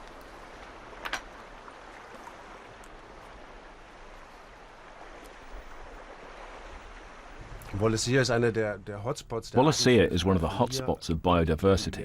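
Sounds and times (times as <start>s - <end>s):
sea water rushing: 0.0s - 8.8s.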